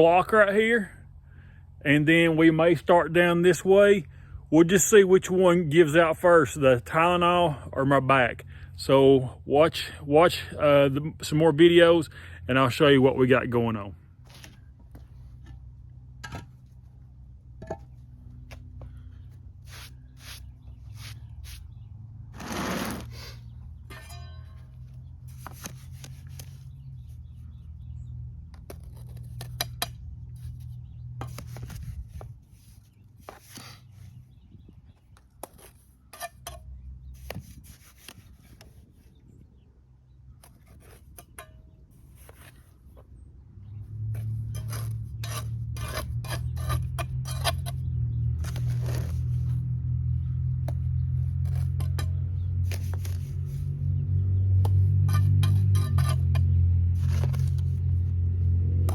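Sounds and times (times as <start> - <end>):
trowel scraping mortar: 19.6 - 21.8, 22.4 - 24.3, 25.2 - 26.8, 28.5 - 34.2, 35.2 - 38.8, 40.3 - 42.8, 44.1 - 49.6, 51.3 - 53.8, 54.7 - 57.9
trowel clinking on concrete: 23.9 - 24.8, 55.0 - 57.6.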